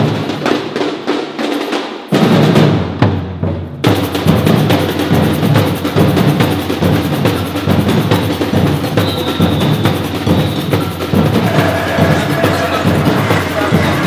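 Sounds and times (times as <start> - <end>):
drums playing rhythm: 0.0 - 14.0.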